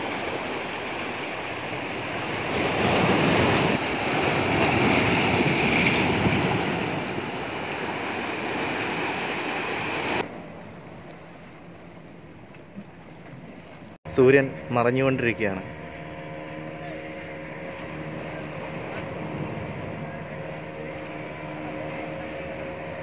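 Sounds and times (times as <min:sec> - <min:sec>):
sea surf washing in: 0:00.0 - 0:10.8
wind on microphone: 0:01.5 - 0:11.4.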